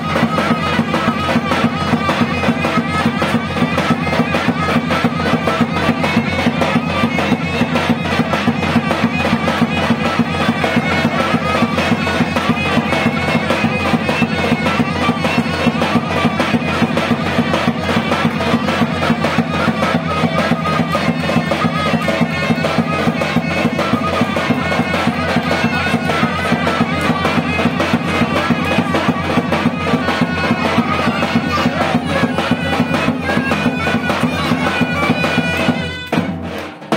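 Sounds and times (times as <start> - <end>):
fast drumbeat: 0.0 - 36.9
reedy wind instrument melody: 0.0 - 36.9.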